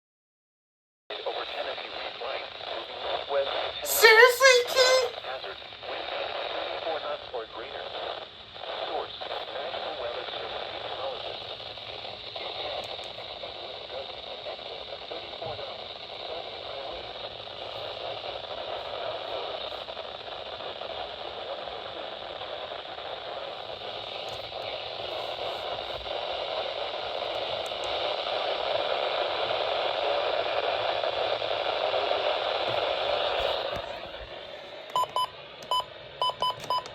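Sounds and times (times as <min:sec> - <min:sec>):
radio static hiss: 0:01.1 - 0:36.9.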